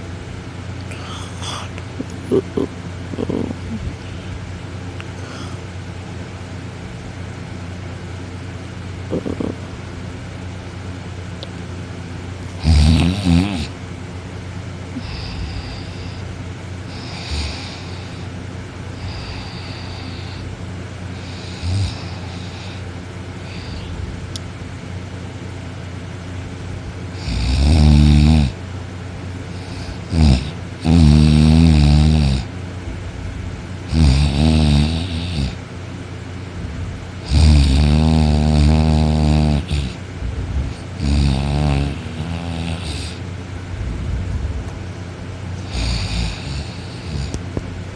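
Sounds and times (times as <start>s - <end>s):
loud snoring: 9.1s - 9.6s, 12.6s - 13.8s, 15.0s - 16.2s, 16.9s - 18.3s, 21.2s - 22.8s, 27.1s - 28.6s, 29.5s - 32.5s, 33.9s - 35.6s, 37.2s - 40.0s, 40.7s - 43.2s, 45.6s - 47.4s.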